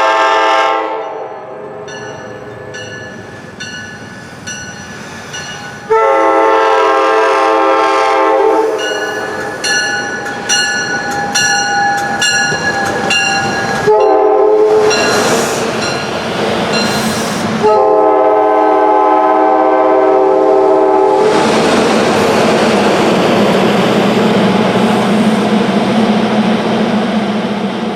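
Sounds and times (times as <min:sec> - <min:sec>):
train air horn chord blasts: 0:00.0 - 0:01.9, 0:05.9 - 0:08.9, 0:13.8 - 0:15.0, 0:17.6 - 0:21.2
train rushing past: 0:00.0 - 0:27.9
wheels clicking over rail joints: 0:09.2 - 0:13.9.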